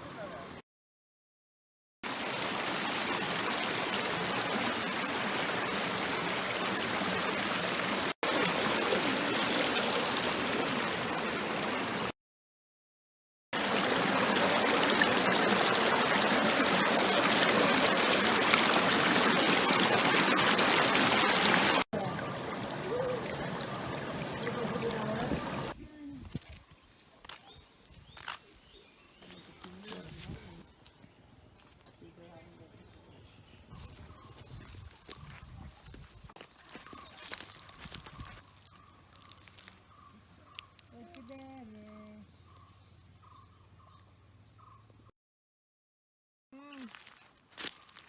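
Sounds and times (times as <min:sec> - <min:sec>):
flowing water rushing: 0:02.0 - 0:12.1, 0:13.6 - 0:25.8.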